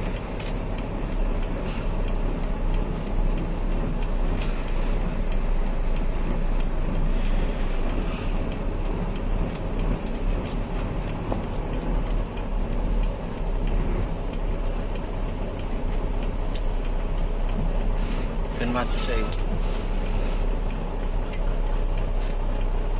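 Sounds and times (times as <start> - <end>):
light even ticking: 0.0 - 22.9
truck engine and road rumble: 0.0 - 22.9.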